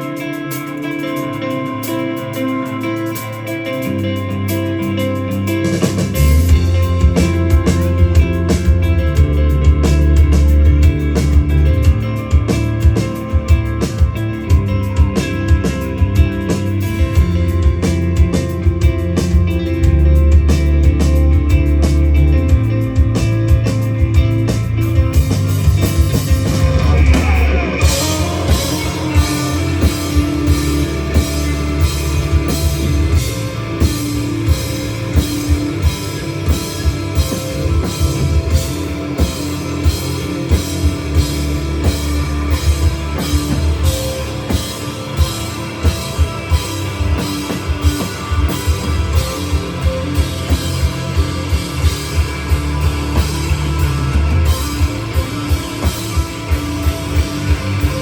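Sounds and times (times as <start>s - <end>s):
bass guitar: 0.0s - 58.0s
drum kit beat: 0.0s - 58.0s
electric guitar: 0.0s - 58.0s.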